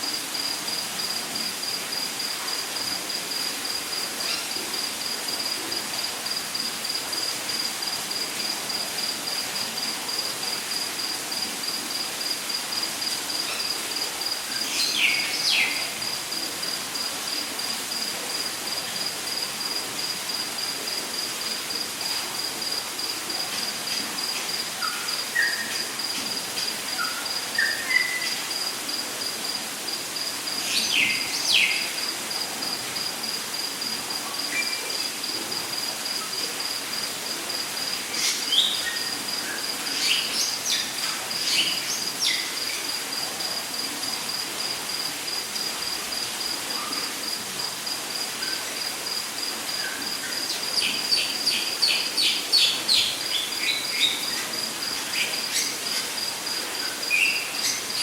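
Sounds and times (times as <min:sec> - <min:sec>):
insect trilling: 0:23.9 - 0:29.6.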